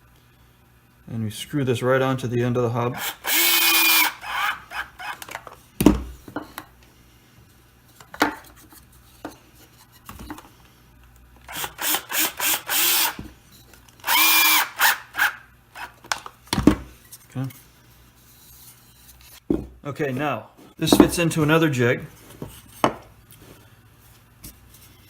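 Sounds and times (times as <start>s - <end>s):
power drill driving screws into wood: 3.0s - 5.4s, 11.5s - 13.3s, 14.0s - 16.0s
workpiece knocks: 20.9s - 21.2s.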